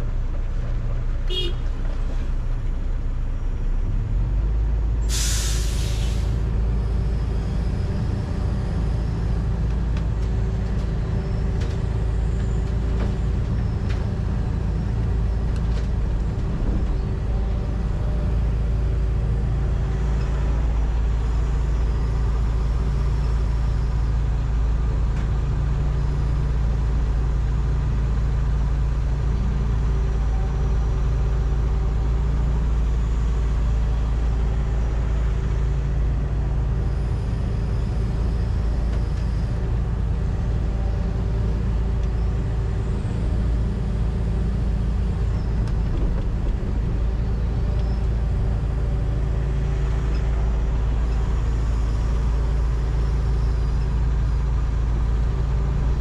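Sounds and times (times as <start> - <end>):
excavator diesel engine rumbling: 0.0 - 56.0
air hiss: 5.1 - 6.3.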